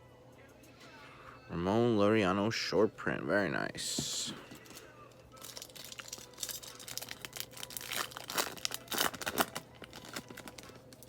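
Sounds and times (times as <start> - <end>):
plastic wrapper crinkling and tearing: 4.6 - 11.0.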